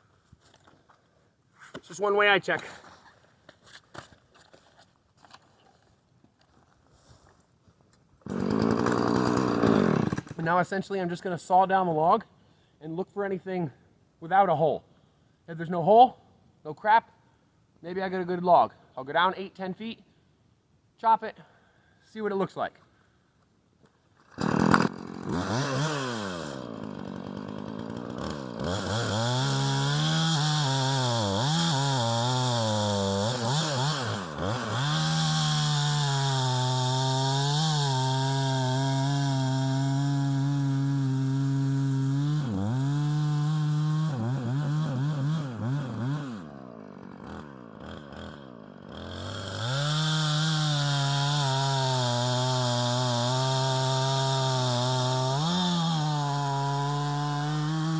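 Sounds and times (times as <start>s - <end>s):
chainsaw cutting log: 8.2s - 10.5s, 24.2s - 57.9s.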